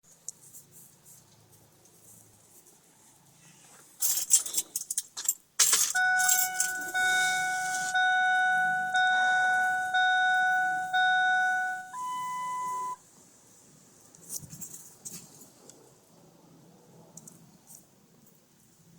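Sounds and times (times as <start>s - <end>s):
keys jangling: 4.0s - 7.0s
dashboard warning chime: 5.9s - 13.0s
higher beep: 6.0s - 13.0s.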